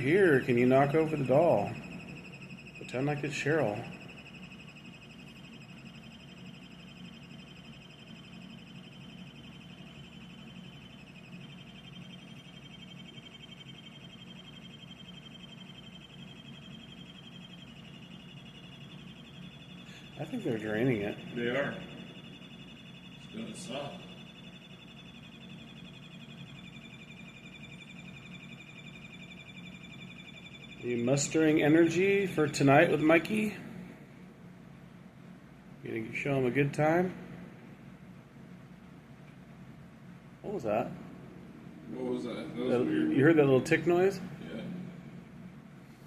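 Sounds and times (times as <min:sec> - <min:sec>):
warbling electronic alarm tone: 0:00.0 - 0:34.0, 0:40.6 - 0:45.2
low steady hum: 0:00.0 - 0:46.0
low hum: 0:40.5 - 0:46.0
electronic warbling alert tone: 0:41.9 - 0:44.4.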